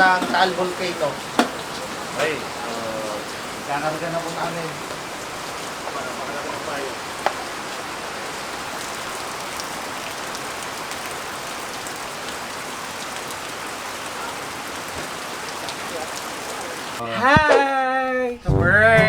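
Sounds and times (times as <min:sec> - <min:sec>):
drops ticking: 0:00.0 - 0:08.2
steady rain falling: 0:00.0 - 0:17.0.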